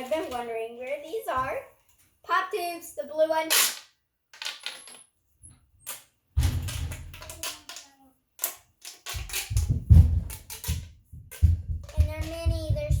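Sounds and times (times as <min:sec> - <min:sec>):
plastic pop tube popping: 0:06.7 - 0:13.0.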